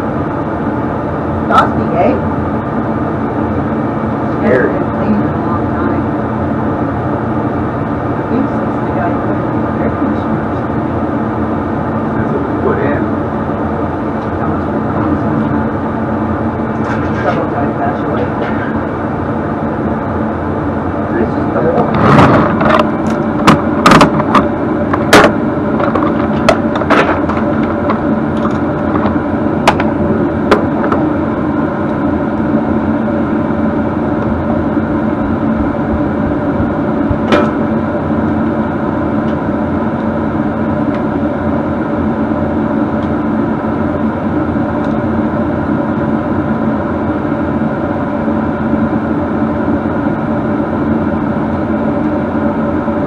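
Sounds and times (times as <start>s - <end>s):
steady motor hum: 0.0s - 53.0s.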